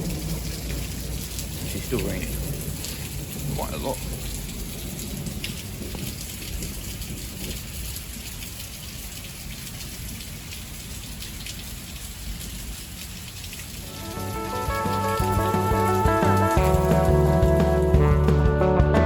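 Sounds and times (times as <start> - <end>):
heavy rain pattering: 0.0 - 18.6
music: 13.9 - 19.0.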